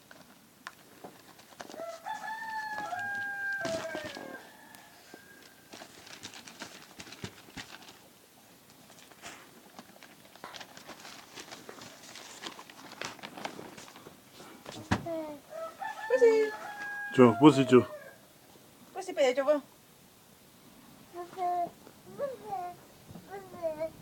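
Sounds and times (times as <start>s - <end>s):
faint ticks and rustles: 0.0s - 17.1s
rooster crowing: 1.7s - 5.8s, 15.5s - 18.3s.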